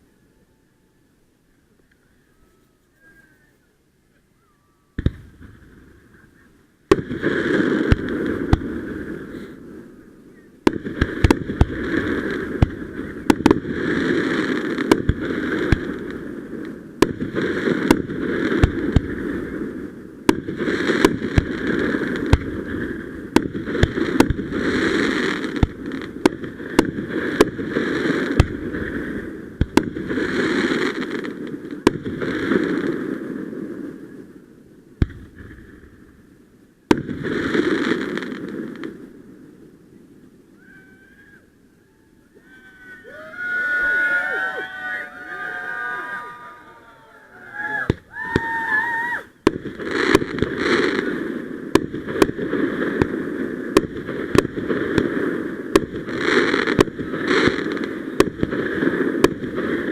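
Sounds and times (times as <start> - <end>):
fireworks crackling with sharp bangs: 5.0 - 40.6, 47.6 - 59.9.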